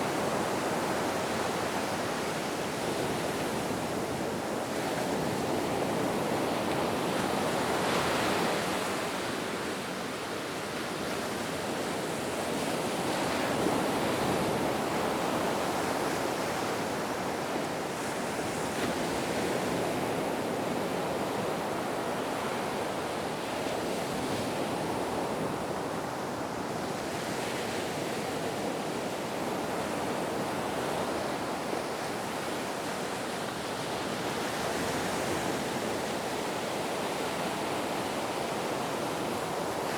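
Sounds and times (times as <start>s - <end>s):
ocean waves on a beach: 0.0s - 39.9s.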